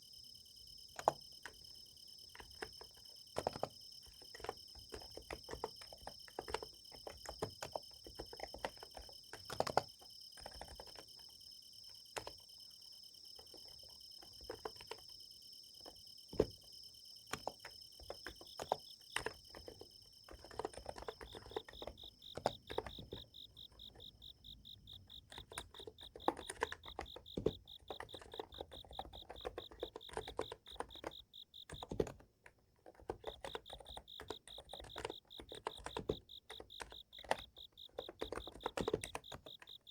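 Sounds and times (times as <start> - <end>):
insects chirping: 0.0 - 32.2, 32.8 - 39.9
keyboard keystroke clicks: 17.2 - 39.9.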